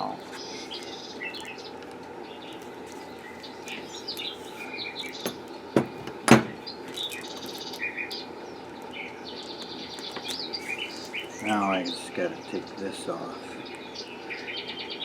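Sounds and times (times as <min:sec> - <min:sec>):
small bird chirping and twittering: 0:00.0 - 0:05.4, 0:06.5 - 0:15.0
sharp knocks: 0:05.3 - 0:06.6.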